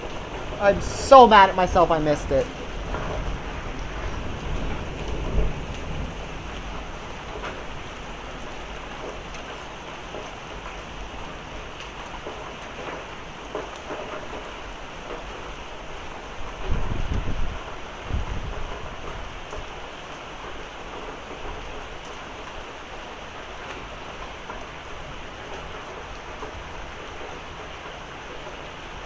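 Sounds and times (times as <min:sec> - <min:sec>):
hailstones ticking: 0:00.0 - 0:16.6
heavy rain pouring: 0:00.0 - 0:29.0
low thunder rumble: 0:01.8 - 0:07.9.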